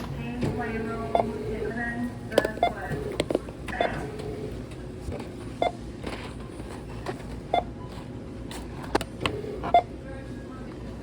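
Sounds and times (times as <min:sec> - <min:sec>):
store background noise: 0:00.0 - 0:11.0
barcode scanner beeping: 0:00.5 - 0:04.3, 0:05.6 - 0:05.8, 0:09.2 - 0:09.9.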